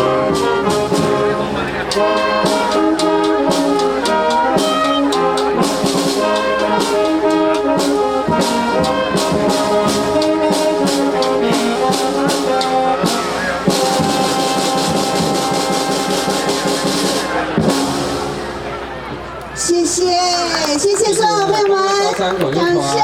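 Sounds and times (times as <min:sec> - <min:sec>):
percussion hits: 0:00.0 - 0:22.5
wind band playing: 0:00.0 - 0:23.0.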